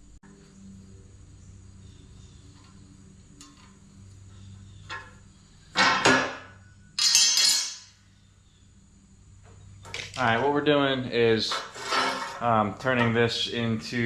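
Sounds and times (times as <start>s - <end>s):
steel plate clanking: 11.4s - 13.5s.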